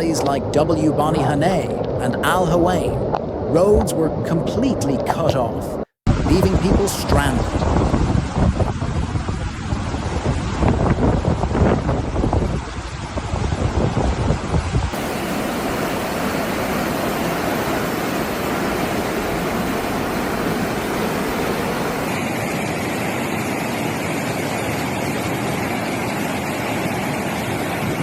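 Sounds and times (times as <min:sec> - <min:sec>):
floodwater rushing: 0:00.0 - 0:01.4, 0:14.9 - 0:28.0.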